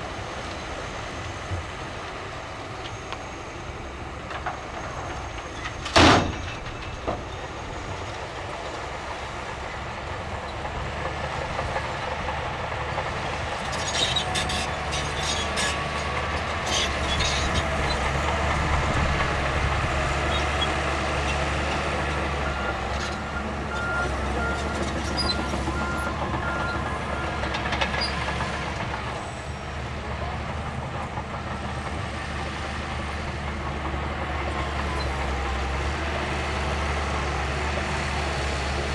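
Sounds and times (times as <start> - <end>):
diesel earthmoving machinery running: 0.0 - 38.9
clanking and knocking: 4.3 - 8.1.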